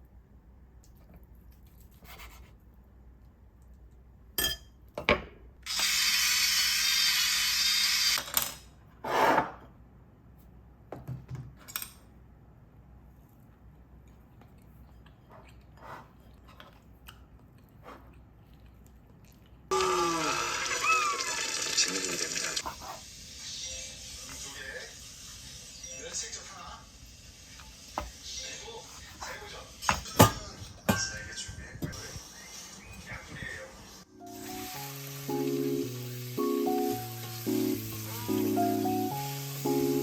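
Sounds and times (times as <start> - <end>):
dishes and utensils clinking: 4.4 - 5.2.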